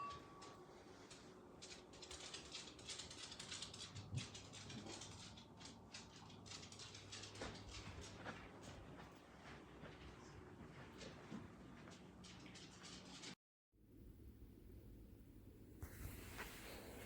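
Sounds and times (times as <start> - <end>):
light ticks and rustling: 0.4 - 13.4.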